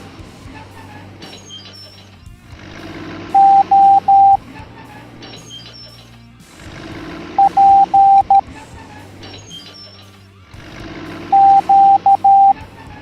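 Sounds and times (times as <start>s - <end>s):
background music: 0.0s - 13.0s
morse code beeps: 3.4s - 4.4s, 7.4s - 8.4s, 11.3s - 12.6s.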